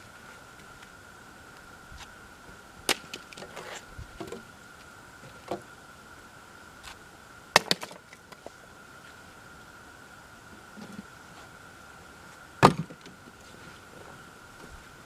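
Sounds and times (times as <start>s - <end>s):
firewood knocking: 12.6s - 13.0s.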